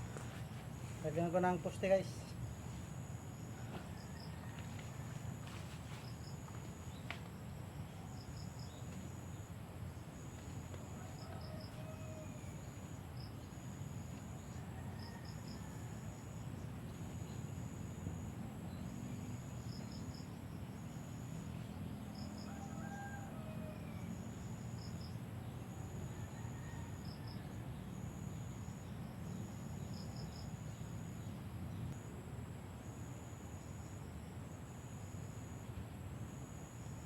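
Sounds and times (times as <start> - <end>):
insect paired chirp: 0.0 - 37.0
insects trilling: 0.0 - 37.0.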